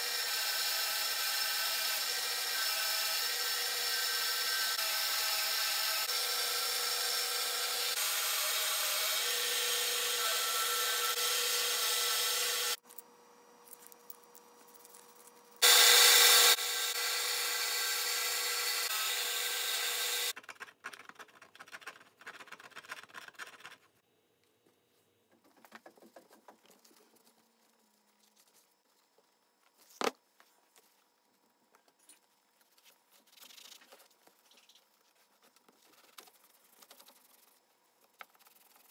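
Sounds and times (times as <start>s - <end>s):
power tool whining and grinding: 0.0s - 12.8s, 15.6s - 20.3s
handling clicks and scrapes: 12.8s - 15.6s.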